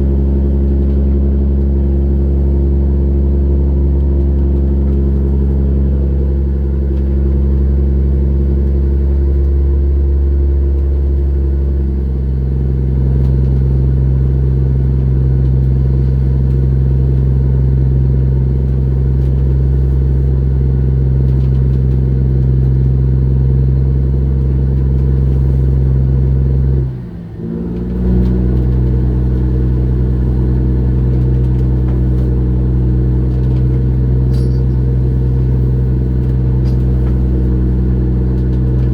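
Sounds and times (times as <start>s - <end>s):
boat diesel engine humming: 0.0s - 10.2s, 18.6s - 21.8s, 22.8s - 26.8s, 28.8s - 38.9s.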